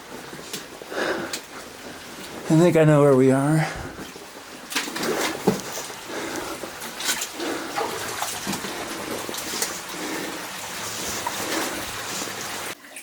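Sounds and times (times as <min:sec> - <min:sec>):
wading through water splashing: 0:03.6 - 0:12.8.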